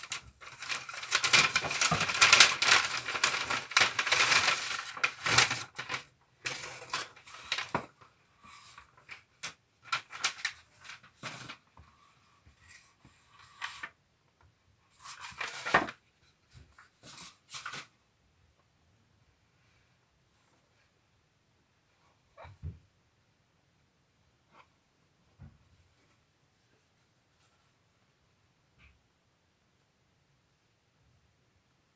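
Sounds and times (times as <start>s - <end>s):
packaging rustling and crinkling: 0.0s - 8.0s, 8.8s - 11.7s.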